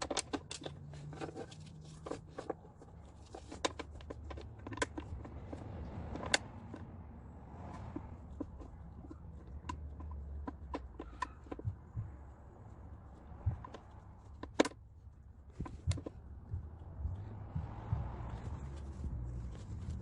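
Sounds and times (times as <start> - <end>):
clicks and knocks of hand tools: 0.0 - 6.9, 7.7 - 11.8.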